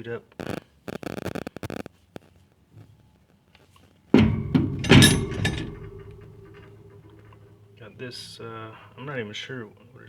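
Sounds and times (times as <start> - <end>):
hand tool thunk: 4.2 - 7.5
tools clattering and ringing: 4.2 - 8.5.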